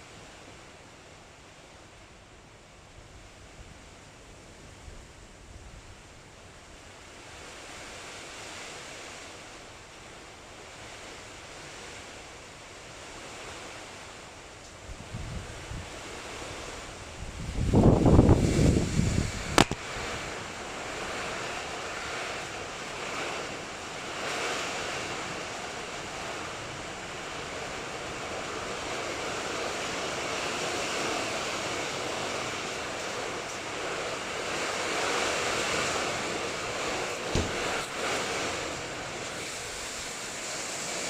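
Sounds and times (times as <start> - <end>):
heavy rain pouring: 6.3 - 41.0
sharp click: 19.6 - 19.8.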